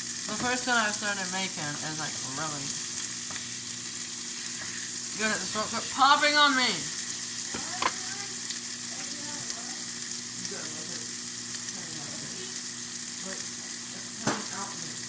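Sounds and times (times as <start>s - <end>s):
burger patties sizzling in skillet: 0.0s - 15.0s
grease popping: 7.4s - 8.3s.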